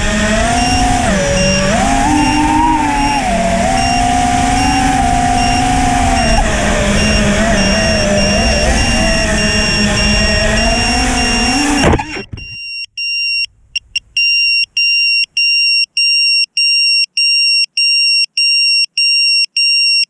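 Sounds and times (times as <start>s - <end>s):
quadcopter motors whining: 0.0s - 12.6s
buzzer beeping: 0.0s - 20.0s.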